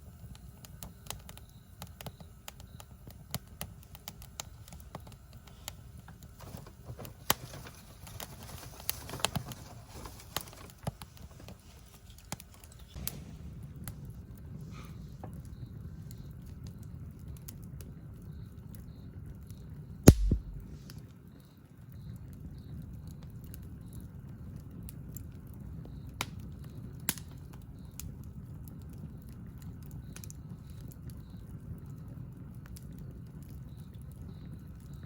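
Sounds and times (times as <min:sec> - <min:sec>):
campfire crackling and popping: 0:00.0 - 0:14.7, 0:15.3 - 0:20.9, 0:22.2 - 0:35.0
low rumble: 0:20.1 - 0:20.7.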